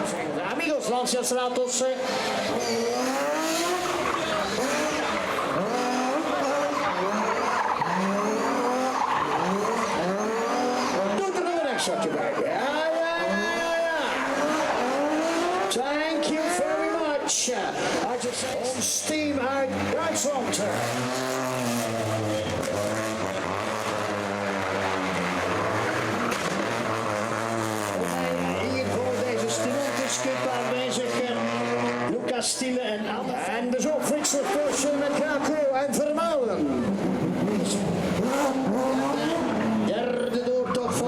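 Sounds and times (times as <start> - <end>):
tyres squealing on tarmac: 2.0 - 31.6
car engine revving hard: 2.0 - 32.4, 36.6 - 41.0.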